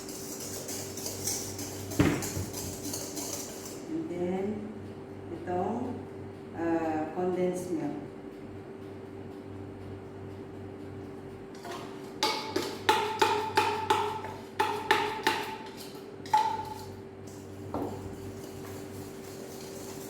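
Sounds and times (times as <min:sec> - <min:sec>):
can knocking against metal: 0:01.9 - 0:02.9, 0:11.6 - 0:15.5.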